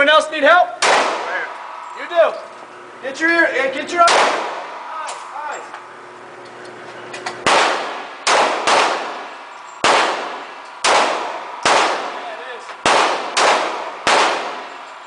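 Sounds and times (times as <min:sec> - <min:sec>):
gunshots with ringing echo: 0:00.8 - 0:01.9, 0:04.0 - 0:04.9, 0:07.4 - 0:14.9.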